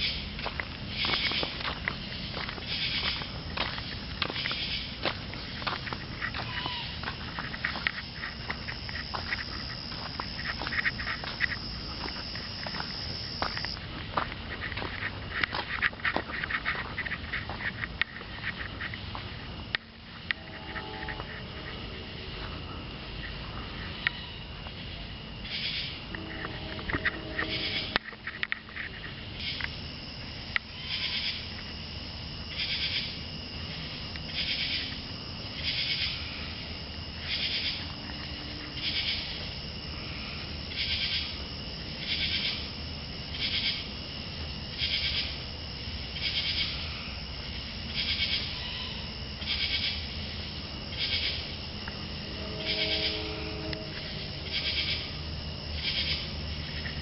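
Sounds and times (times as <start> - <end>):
steady low hum: 0.0 - 57.0
animal calling high-pitched: 6.3 - 7.1, 52.3 - 53.6.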